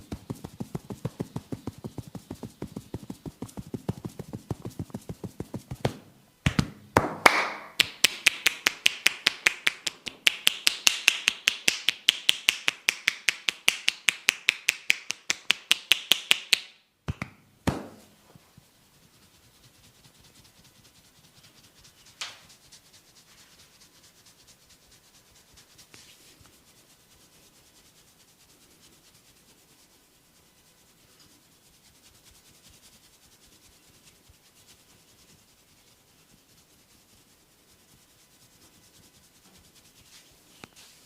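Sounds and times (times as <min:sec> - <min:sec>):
hands rubbing hair and scalp: 0:00.0 - 0:41.0
sharp snaps: 0:05.6 - 0:18.0.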